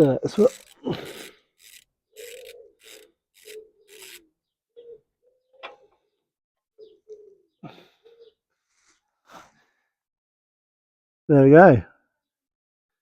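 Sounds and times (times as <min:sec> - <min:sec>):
hex key scraping on plug: 0:00.0 - 0:04.2.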